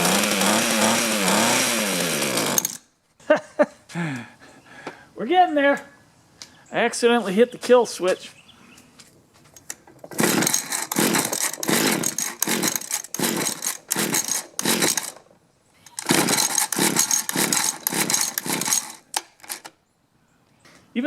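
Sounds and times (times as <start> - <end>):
engine recoil cord being pulled: 0.0 - 2.9, 9.9 - 19.7.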